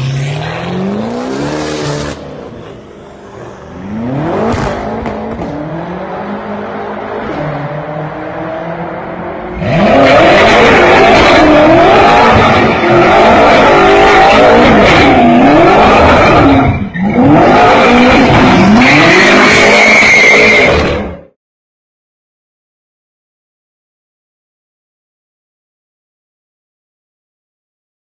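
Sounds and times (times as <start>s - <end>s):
car engine revving: 0.0s - 21.2s.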